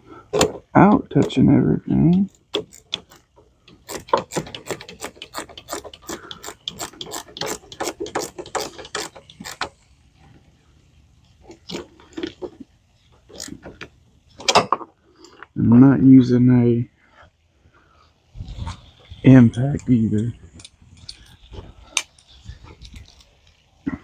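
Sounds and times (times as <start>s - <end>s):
ratchet wrench clicking: 2.3s - 9.9s.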